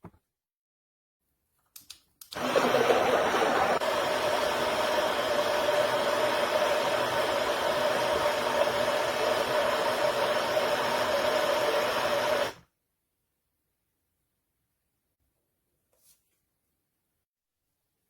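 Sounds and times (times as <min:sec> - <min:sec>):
portable blender motor whirring: 0:02.4 - 0:12.6.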